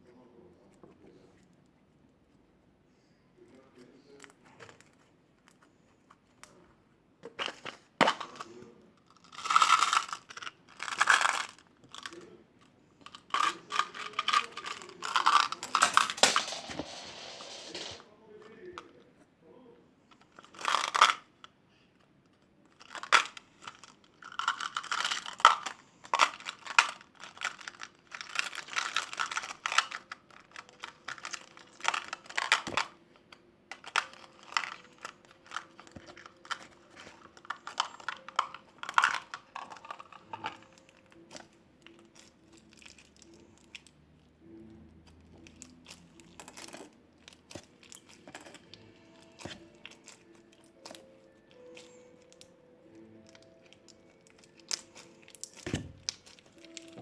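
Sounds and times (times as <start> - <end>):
beaded slime crackling: 45.6 - 57.0.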